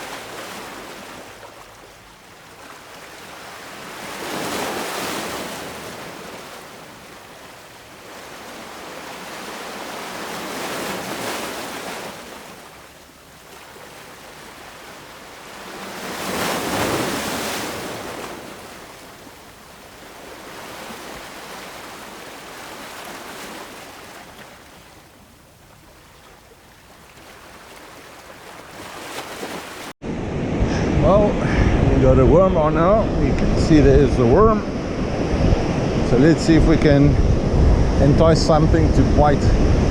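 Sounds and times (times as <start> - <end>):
ocean surf breaking: 0.0 - 39.9.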